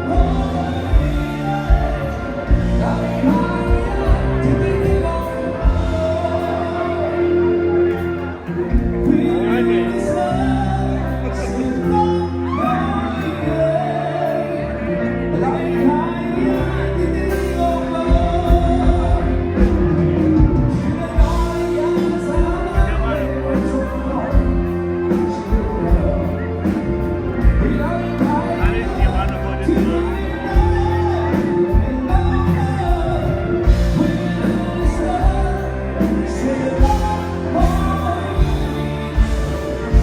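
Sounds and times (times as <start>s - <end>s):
steady drum beat: 0.0s - 6.6s, 17.4s - 40.0s
bass and keyboard chords: 0.0s - 40.0s
person singing: 0.0s - 40.0s.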